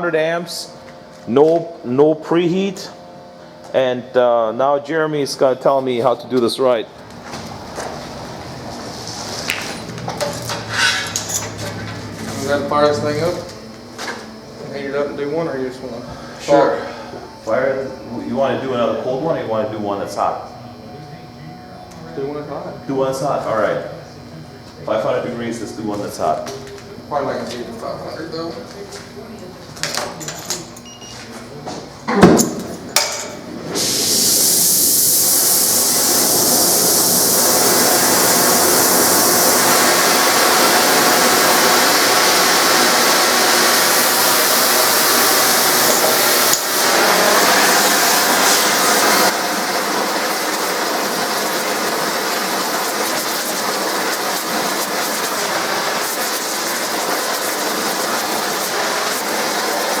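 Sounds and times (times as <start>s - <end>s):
gas torch hissing: 7.0s - 20.4s, 32.4s - 60.0s
loud thump: 32.1s - 33.0s.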